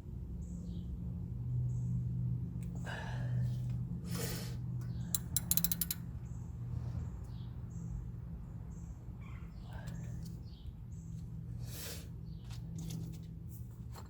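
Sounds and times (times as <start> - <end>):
ratchet tool clicking: 5.1 - 6.0.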